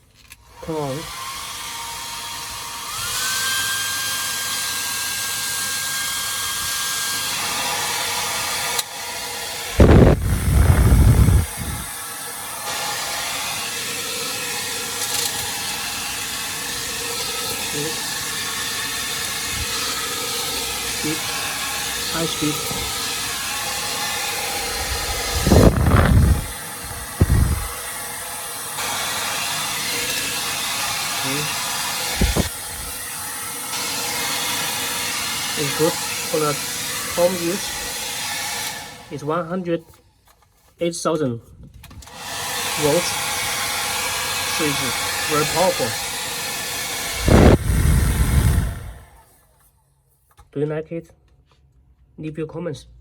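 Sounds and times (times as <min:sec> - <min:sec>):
hair dryer running: 0:00.5 - 0:39.2, 0:42.0 - 0:49.3
low rumbling gusts: 0:09.7 - 0:11.9, 0:24.6 - 0:27.8, 0:32.2 - 0:32.9, 0:47.2 - 0:49.0.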